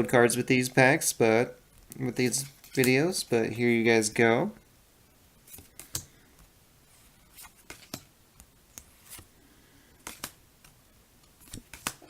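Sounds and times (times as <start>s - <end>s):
trading cards clicking and tapping: 10.0s - 10.8s, 11.4s - 12.0s.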